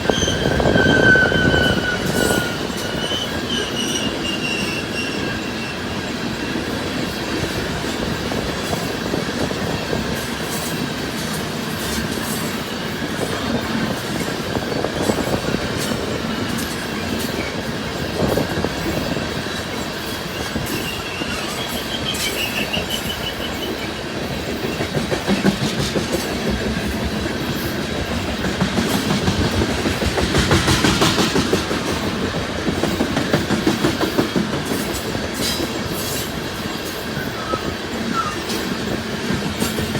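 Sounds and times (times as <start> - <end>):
high wheel squeal: 0.0 - 6.6, 20.1 - 24.1, 36.0 - 38.7
train wheels clicking over rail joints: 0.0 - 39.9.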